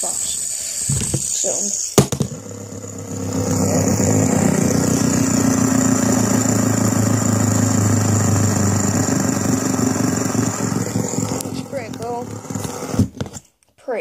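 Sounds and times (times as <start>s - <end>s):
fidget spinner whirring: 0.0s - 13.4s.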